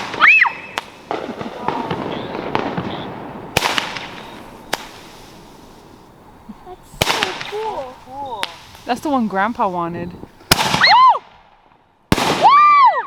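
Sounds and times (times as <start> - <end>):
fireworks crackling: 0.0 - 12.8
fireworks bangs: 0.0 - 12.9.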